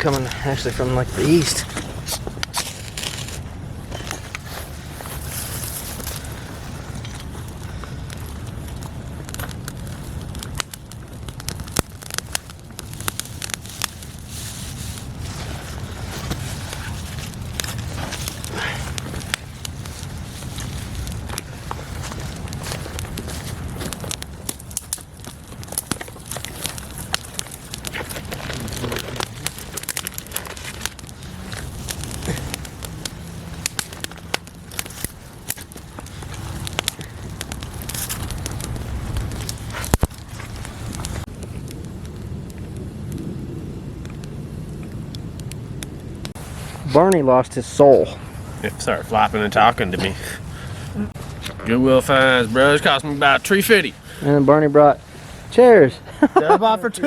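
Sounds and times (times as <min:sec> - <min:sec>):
campfire crackling and popping: 0:00.0 - 0:57.0
low rumble: 0:14.8 - 0:47.0.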